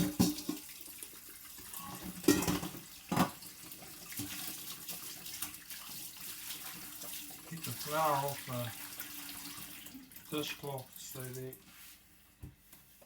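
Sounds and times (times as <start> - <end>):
tap running into sink: 0.0 - 0.7, 1.8 - 3.4
water splashes: 4.0 - 11.7.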